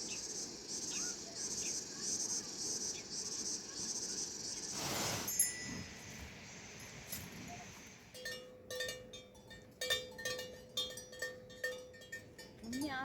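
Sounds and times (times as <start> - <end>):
small metal bell clanking: 5.3 - 6.0, 8.1 - 13.0.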